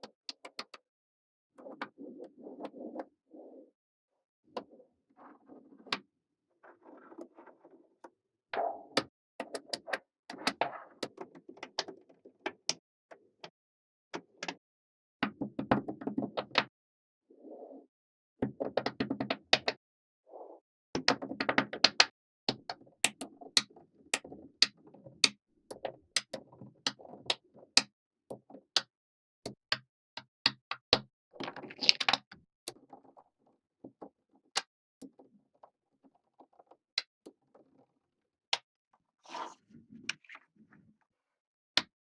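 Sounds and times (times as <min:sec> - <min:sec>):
magnetic balls clicking together: 0:26.2 - 0:26.4.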